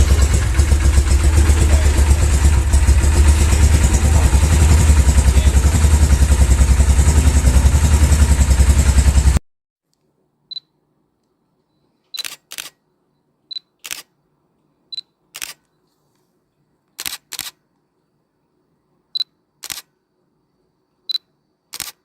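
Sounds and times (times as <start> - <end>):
camera shutter clicking: 12.1 - 12.8, 13.8 - 14.1, 15.4 - 15.7, 17.0 - 17.6, 19.6 - 19.9, 21.7 - 22.0.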